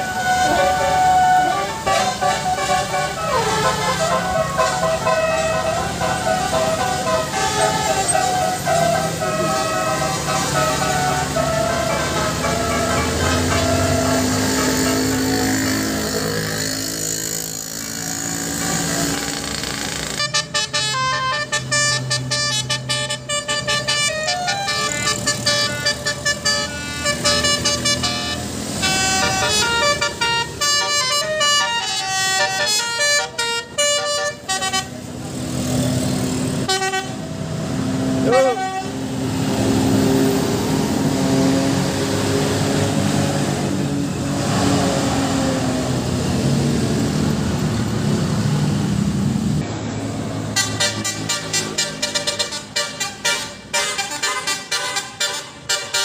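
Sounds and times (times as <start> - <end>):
musical air horn tune: 0.0 - 16.9, 20.1 - 35.0, 36.6 - 37.2, 50.5 - 56.0
bus engine running: 0.0 - 56.0
traffic noise: 0.0 - 56.0.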